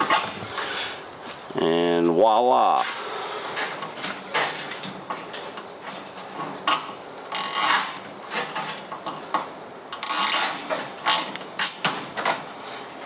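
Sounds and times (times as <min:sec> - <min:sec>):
scraping or rubbing: 0:05.8 - 0:08.9.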